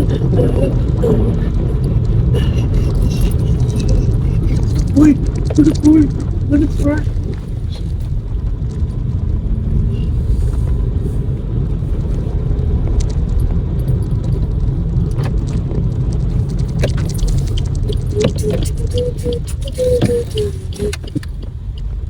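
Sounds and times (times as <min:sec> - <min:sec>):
car road rumble from cabin: 0:00.0 - 0:22.0
faint clicks: 0:12.0 - 0:22.0.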